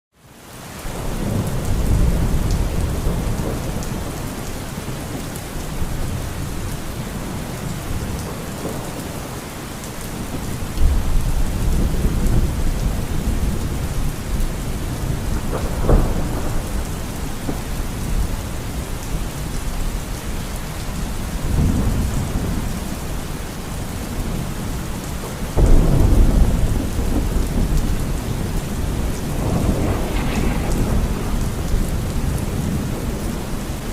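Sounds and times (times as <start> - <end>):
heavy rain falling: 0.2 - 33.9
thunder rumbling: 10.1 - 23.1, 25.5 - 33.9.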